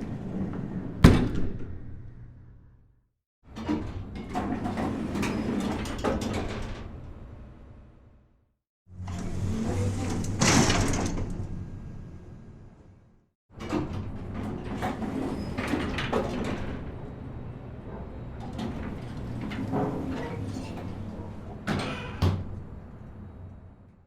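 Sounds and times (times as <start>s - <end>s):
elevator doors sliding rush: 4.3s - 7.2s, 8.9s - 12.9s, 13.6s - 23.5s.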